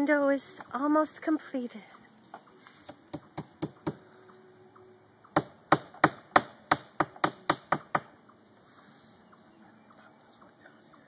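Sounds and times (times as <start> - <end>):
hammer tapping: 2.9 - 4.0.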